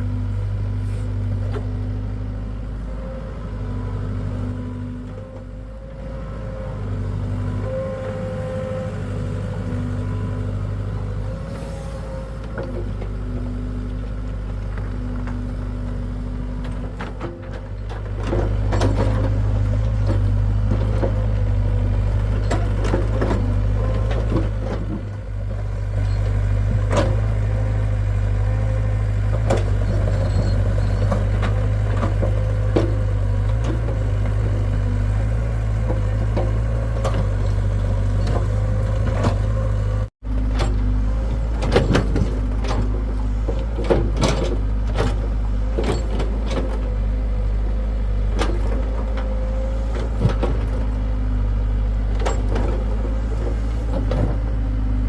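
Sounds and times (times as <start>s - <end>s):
excavator diesel engine running: 0.0s - 55.0s
machine clanks and knocks: 40.4s - 46.8s.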